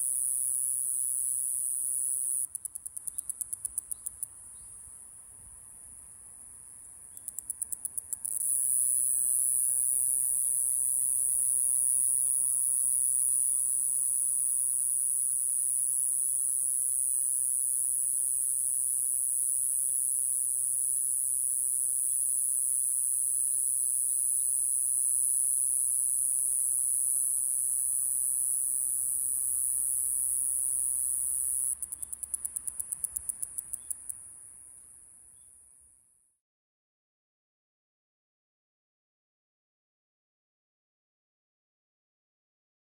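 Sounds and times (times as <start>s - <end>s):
cicada buzzing: 0.0s - 4.2s, 8.2s - 16.6s, 22.8s - 34.1s.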